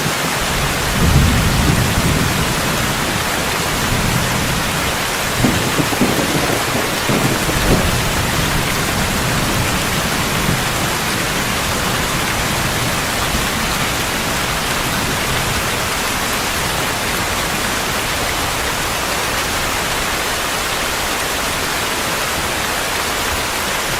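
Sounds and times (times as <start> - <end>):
heavy rain: 0.0 - 23.9
thunder rumbling: 0.4 - 19.2.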